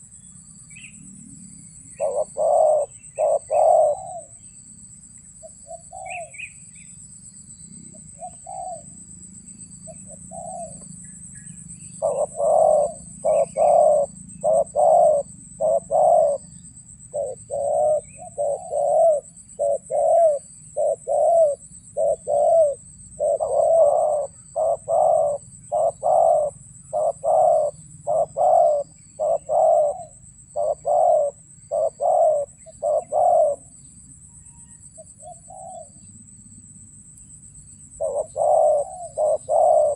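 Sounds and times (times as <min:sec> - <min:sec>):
dove cooing: 0:01.9 - 0:04.4, 0:05.4 - 0:06.6, 0:07.9 - 0:09.0, 0:09.8 - 0:33.7, 0:35.2 - 0:36.0, 0:37.9 - 0:39.9.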